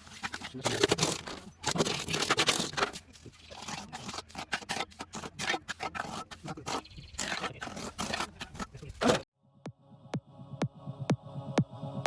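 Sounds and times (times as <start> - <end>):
tools scraping and scratching: 0.0 - 9.2.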